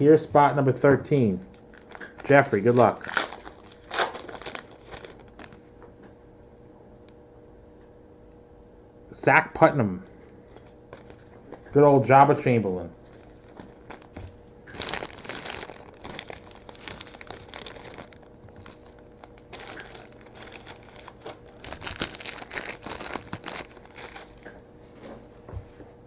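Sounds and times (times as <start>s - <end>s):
packaging crinkling and rustling: 1.5s - 5.6s, 10.9s - 11.6s, 13.0s - 24.6s
packaging tearing: 1.5s - 5.6s, 13.1s - 24.6s.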